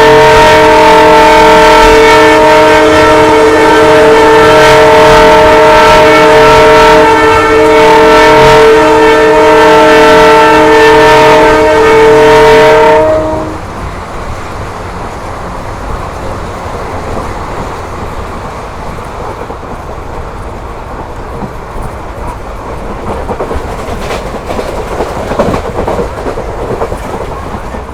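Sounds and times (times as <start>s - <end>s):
locomotive air horn blast: 0.0s - 13.8s
train running on rails: 0.0s - 27.9s.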